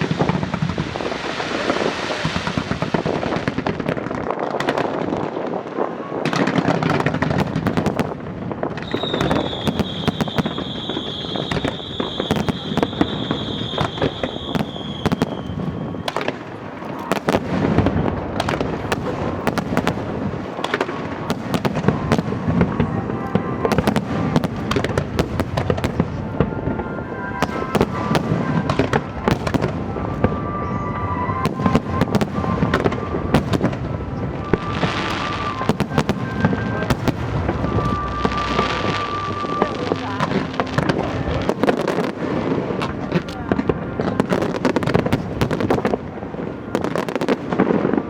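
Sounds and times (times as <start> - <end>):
fireworks bangs and crackles: 0.0 - 48.0
music playing: 22.0 - 43.1.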